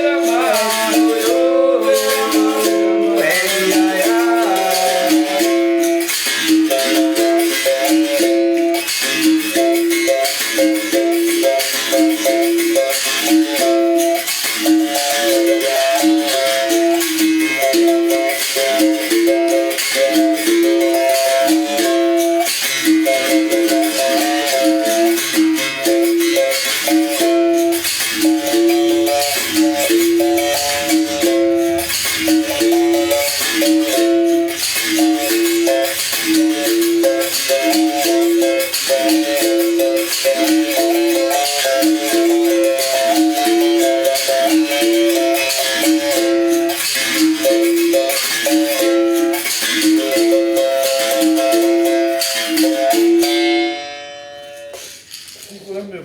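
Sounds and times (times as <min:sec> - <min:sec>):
stick striking wire string: 0:27.1 - 0:46.3
basket rattle shaking: 0:54.8 - 0:55.8.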